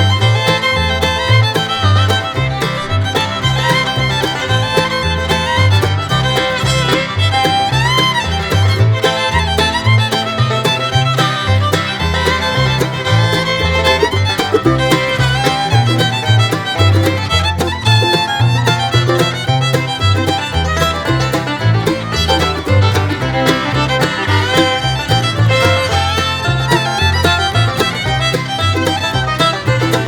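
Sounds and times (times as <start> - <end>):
fiddle: 0.0 - 30.0
walking bass line: 0.0 - 30.0
steady beat: 10.2 - 30.0.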